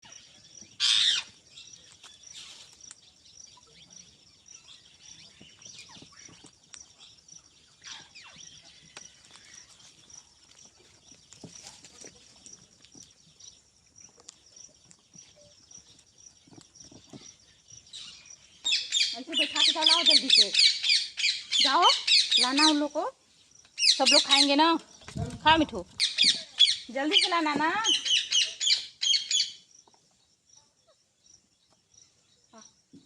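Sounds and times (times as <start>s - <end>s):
parakeet chirps and calls: 0.1s - 2.6s, 7.0s - 9.7s, 17.9s - 22.9s, 23.8s - 24.6s, 25.4s - 29.6s.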